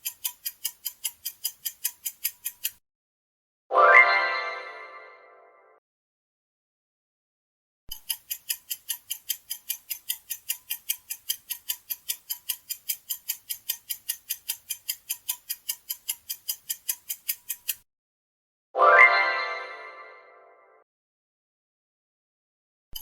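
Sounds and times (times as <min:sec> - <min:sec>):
clock ticking: 0:00.0 - 0:02.8, 0:07.9 - 0:17.8.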